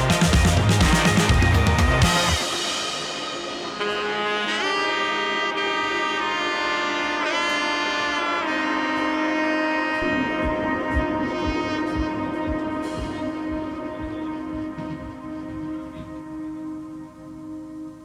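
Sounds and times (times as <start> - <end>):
kick drum beat: 0.0 - 2.5, 10.4 - 16.2
lead melody over held chords: 0.0 - 18.0.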